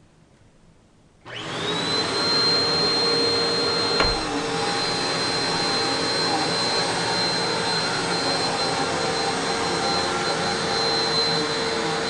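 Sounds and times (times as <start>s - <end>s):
vacuum cleaner whining: 1.2s - 12.0s
single knock: 4.0s - 4.5s.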